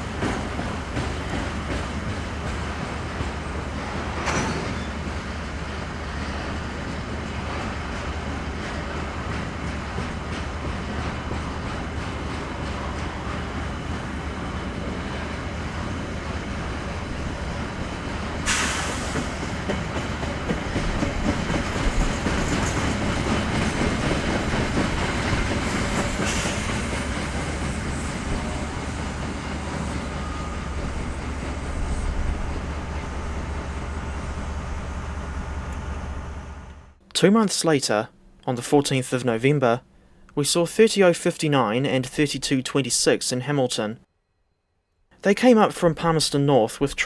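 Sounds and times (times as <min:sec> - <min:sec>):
train rumbling on track: 0:00.0 - 0:37.1
loud hiss: 0:18.2 - 0:19.6, 0:25.7 - 0:28.8.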